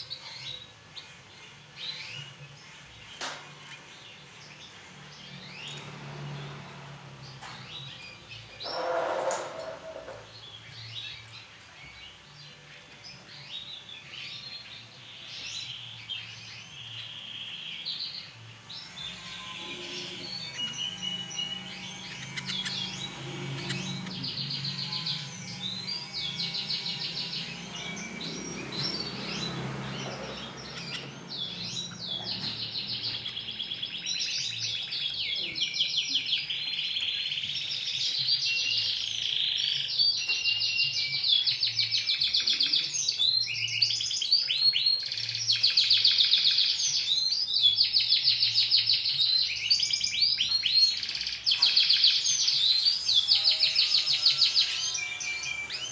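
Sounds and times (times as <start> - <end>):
canary singing trills: 12.8 - 55.9.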